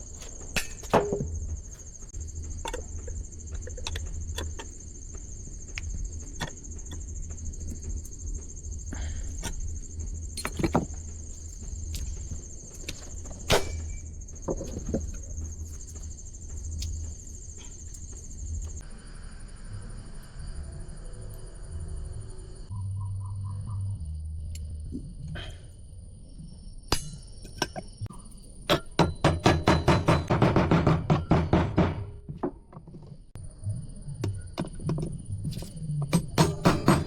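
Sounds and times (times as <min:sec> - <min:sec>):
low hum: 0:00.0 - 0:28.7.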